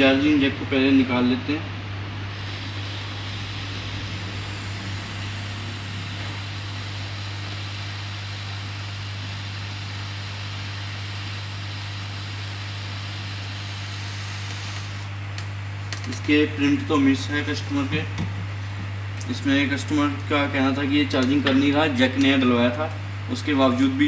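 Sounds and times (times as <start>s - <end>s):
low electrical hum: 0.0s - 24.0s
hot air gun hissing: 2.3s - 15.1s.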